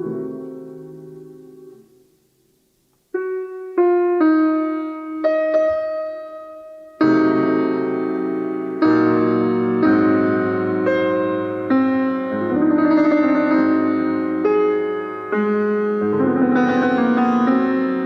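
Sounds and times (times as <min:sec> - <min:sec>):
solo piano: 0:00.0 - 0:18.0.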